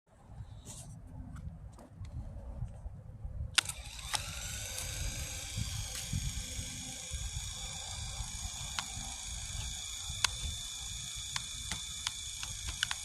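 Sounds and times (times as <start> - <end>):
drone motors whining: 3.6 - 13.0
motor start click: 3.6 - 13.0.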